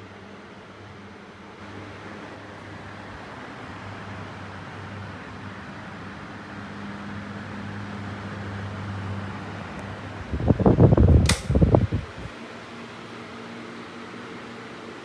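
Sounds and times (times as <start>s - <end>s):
fan motor hum and air rush: 0.0s - 15.0s
wind buffeting microphone: 10.2s - 12.3s
sharp click: 11.2s - 11.8s.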